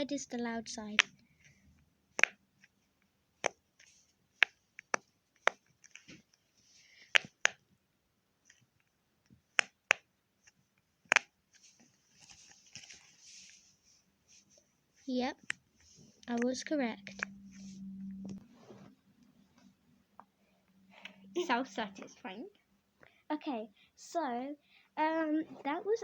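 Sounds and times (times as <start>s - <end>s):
handling rustle: 11.5s - 15.1s.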